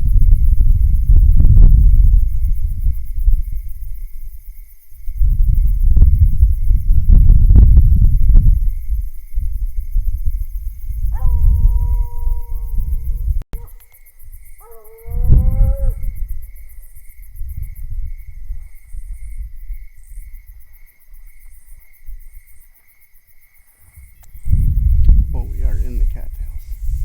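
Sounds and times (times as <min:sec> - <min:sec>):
low microphone rumble: 0:00.0 - 0:13.7, 0:15.1 - 0:16.6, 0:24.0 - 0:27.0
insects chirping: 0:00.0 - 0:27.0
hounds bawling: 0:11.1 - 0:13.8, 0:14.6 - 0:16.2.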